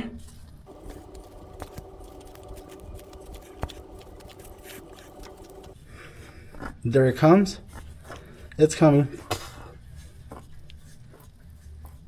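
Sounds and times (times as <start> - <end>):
steady hum: 0.6 - 6.0.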